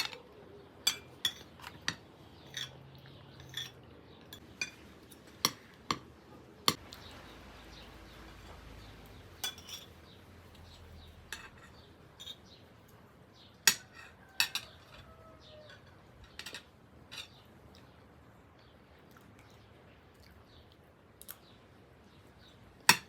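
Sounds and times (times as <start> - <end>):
cutlery clinking against dishes: 0.0 - 6.1, 9.4 - 10.2, 11.3 - 12.6, 13.6 - 17.4.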